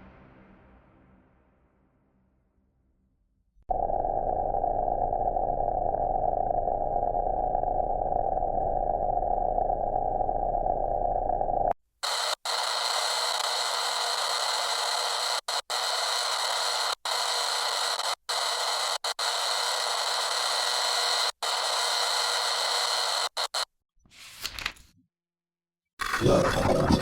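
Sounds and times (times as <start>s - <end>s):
low-pitched sound: 3.7s - 11.8s.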